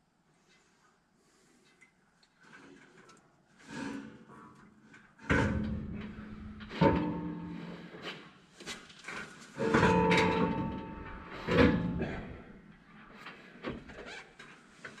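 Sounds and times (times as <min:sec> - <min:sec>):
ringing metal hum: 0:05.6 - 0:08.0, 0:09.6 - 0:12.8
steel parts clanking: 0:09.6 - 0:12.6.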